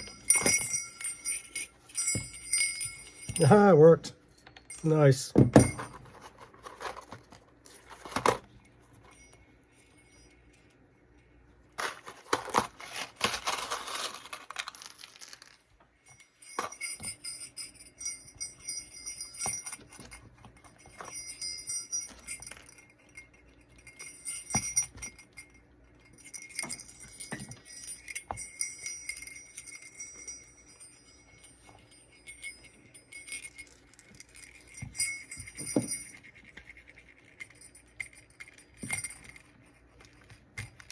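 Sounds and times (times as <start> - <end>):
sleigh bells jingling: 0.0 - 6.0, 12.9 - 39.6.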